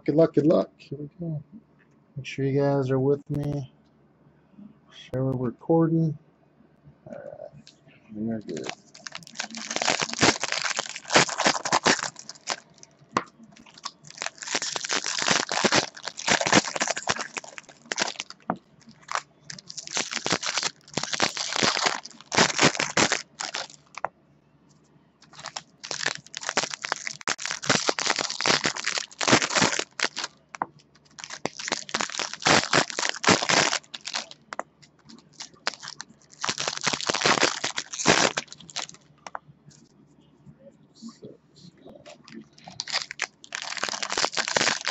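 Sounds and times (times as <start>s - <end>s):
wrappers tearing and crinkling: 8.5s - 12.9s, 13.6s - 24.1s, 25.2s - 39.4s, 42.1s - 44.9s.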